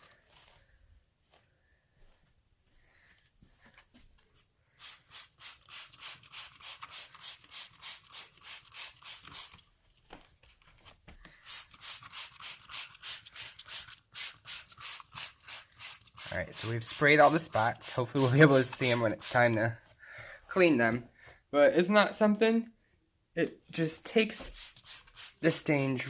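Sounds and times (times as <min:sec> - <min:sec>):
spray bottle hissing: 0:04.8 - 0:09.6, 0:11.4 - 0:19.6, 0:24.3 - 0:26.0.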